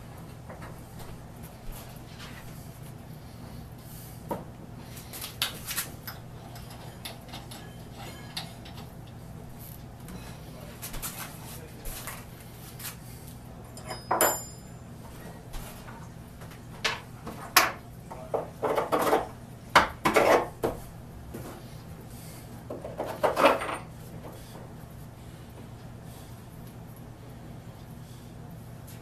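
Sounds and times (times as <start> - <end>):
steady low hum: 0.0 - 29.0
metal tools clattering: 6.0 - 8.9, 13.8 - 14.7.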